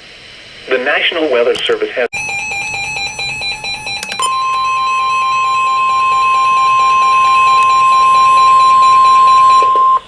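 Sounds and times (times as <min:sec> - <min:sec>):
steady warning alarm tone: 0:02.1 - 0:10.0.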